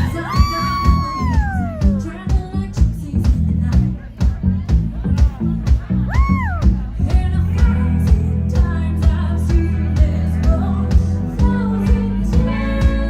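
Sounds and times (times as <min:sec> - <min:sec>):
person singing: 0:00.0 - 0:03.3
drums beating: 0:00.0 - 0:11.6
live rock band playing: 0:00.0 - 0:13.0.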